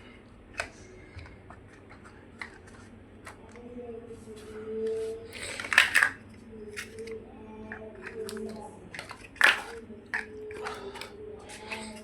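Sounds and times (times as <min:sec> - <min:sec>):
plastic blocks clicking and rattling: 0:05.3 - 0:12.0.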